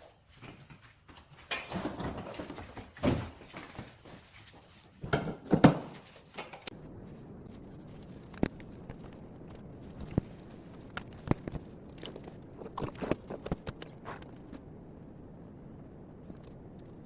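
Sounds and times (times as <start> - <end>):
knocks and thumps: 5.0 - 6.0.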